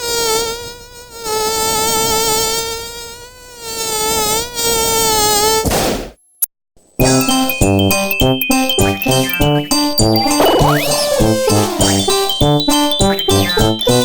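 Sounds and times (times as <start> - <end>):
synthesized buzzing ringtone: 7.0 - 14.0.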